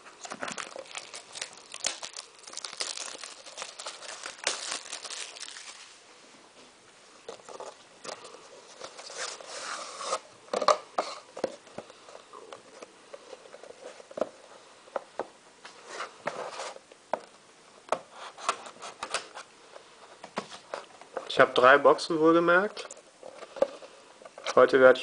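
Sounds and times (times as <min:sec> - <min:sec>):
cardboard rustling: 0:00.1 - 0:05.9
wrapper crinkling: 0:00.2 - 0:06.0.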